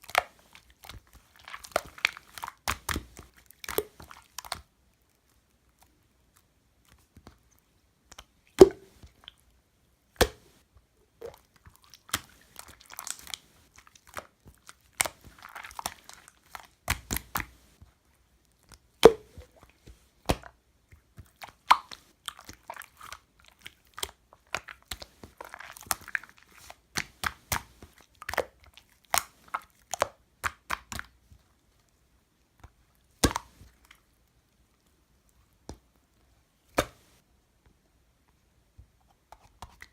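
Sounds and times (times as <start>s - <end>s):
slime squishing: 0.0s - 9.5s, 10.1s - 37.2s
slime popping and clicking: 33.2s - 33.5s.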